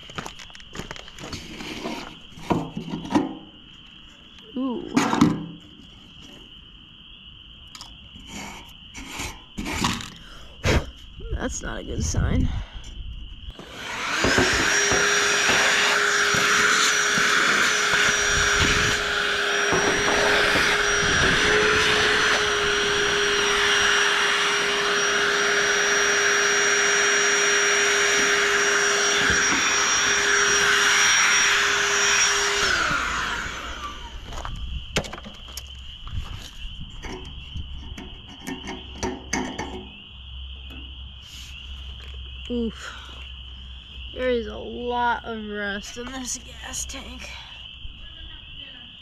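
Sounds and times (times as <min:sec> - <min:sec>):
small electric motor whooshing: 0:13.5 - 0:34.4.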